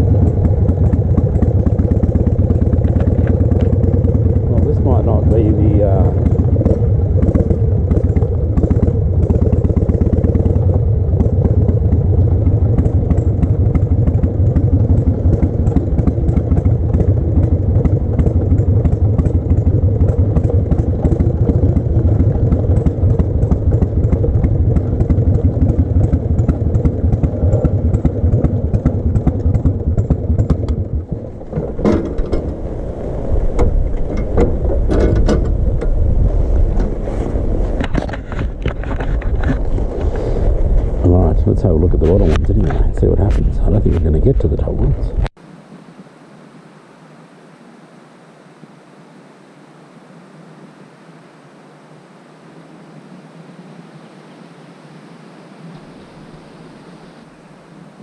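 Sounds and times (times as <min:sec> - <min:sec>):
engine knocks: 0:00.0 - 0:45.3
motorcycle engine running: 0:00.0 - 0:45.4.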